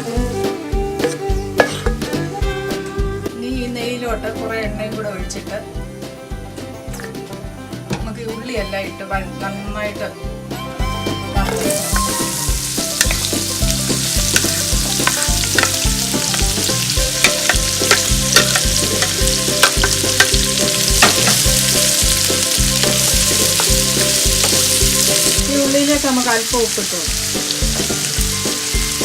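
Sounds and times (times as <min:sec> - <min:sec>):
onions sizzling in a pan: 0:11.4 - 0:29.0.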